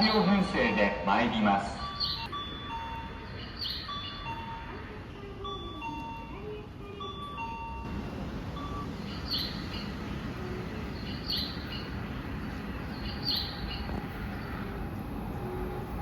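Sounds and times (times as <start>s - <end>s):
electronic bird-call chime: 0.1s - 6.4s, 7.0s - 10.0s
low rumble of platform noise: 7.9s - 16.0s.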